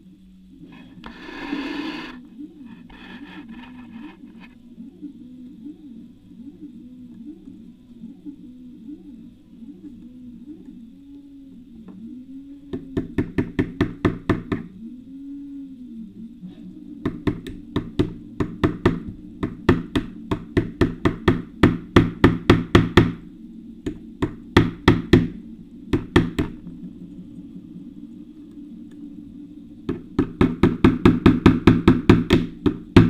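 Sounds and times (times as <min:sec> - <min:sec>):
hammer tapping on nail punch: 0:17.0 - 0:23.2, 0:29.9 - 0:33.0.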